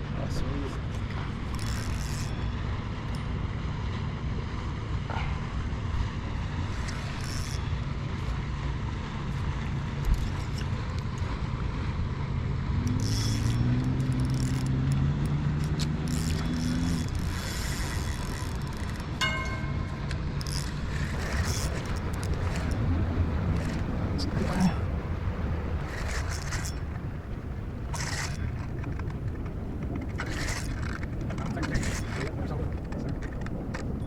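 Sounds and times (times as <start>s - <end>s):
engine running steadily: 0.0s - 34.0s
passing engine hum: 10.8s - 34.0s.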